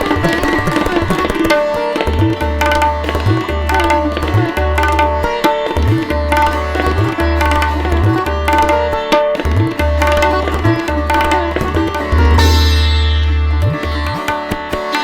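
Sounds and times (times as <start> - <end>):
hand percussion strokes: 9.4 - 15.0
sliding deep bass note: 12.1 - 13.8.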